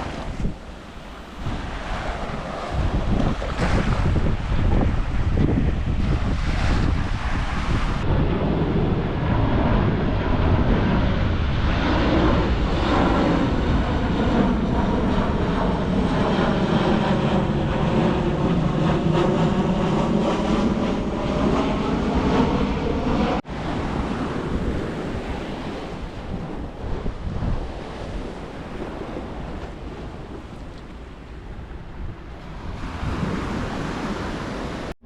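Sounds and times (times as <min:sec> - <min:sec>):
surf: 0:00.0 - 0:15.4, 0:23.5 - 0:34.9
aircraft engine drone: 0:00.0 - 0:35.0
wind noise: 0:00.0 - 0:35.0.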